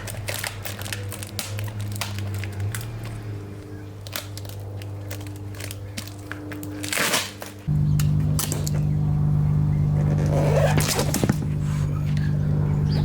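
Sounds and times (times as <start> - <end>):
wrapping crinkling: 0.0 - 3.4, 4.0 - 7.7
low hum: 7.6 - 13.0.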